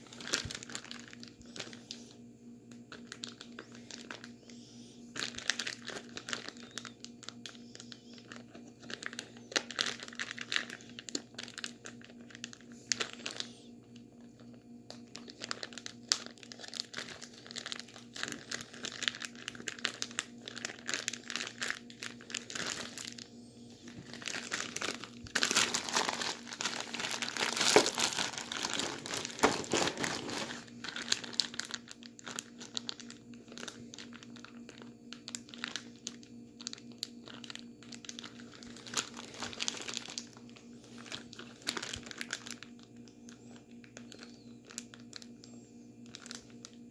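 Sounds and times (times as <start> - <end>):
plastic bag crinkling: 0.0 - 46.9.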